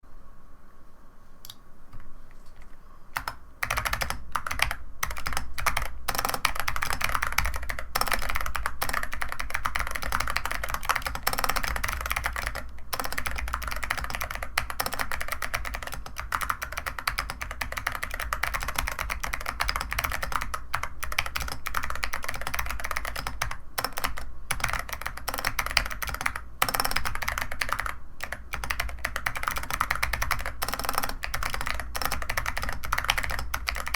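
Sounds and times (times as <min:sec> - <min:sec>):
mechanical keyboard typing: 0:03.2 - 0:33.9.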